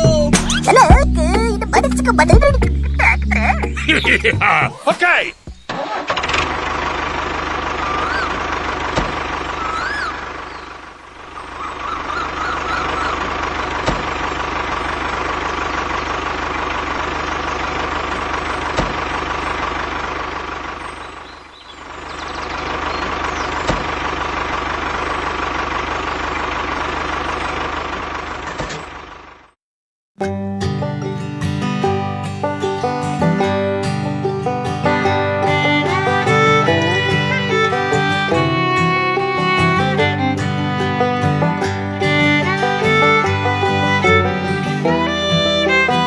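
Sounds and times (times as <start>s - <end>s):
plucked string music: 0.0s - 4.9s, 30.2s - 46.0s
tractor engine running: 0.0s - 29.6s, 30.6s - 46.0s.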